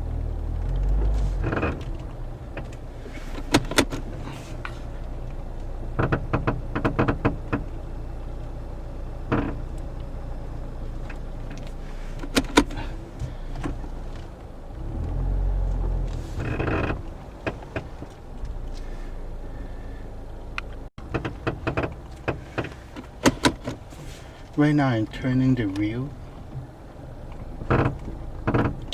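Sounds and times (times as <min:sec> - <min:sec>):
car engine humming: 0:00.0 - 0:28.9
sharp clicks and knocks: 0:00.6 - 0:07.8, 0:09.2 - 0:10.1, 0:11.0 - 0:18.9, 0:20.5 - 0:23.9, 0:25.7 - 0:28.9.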